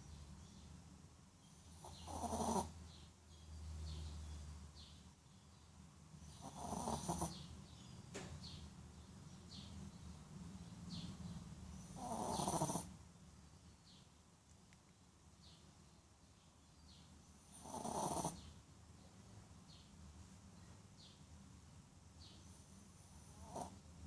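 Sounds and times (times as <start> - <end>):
dog snoring: 1.6 - 2.8, 6.3 - 7.5, 11.9 - 12.9, 17.4 - 18.5, 23.0 - 23.8.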